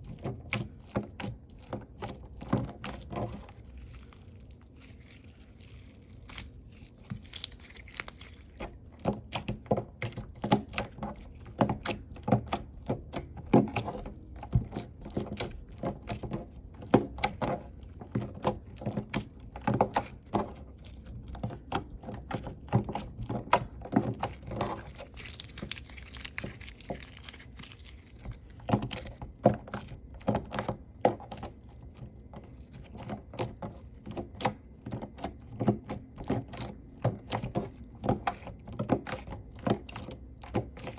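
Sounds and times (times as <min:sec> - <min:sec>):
hands kneading sticky slime: 0:00.0 - 0:40.9.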